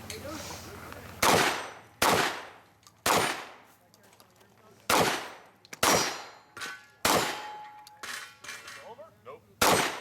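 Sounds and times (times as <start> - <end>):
shotgun shots with echo: 1.2 - 3.6, 4.9 - 7.6, 9.6 - 10.0.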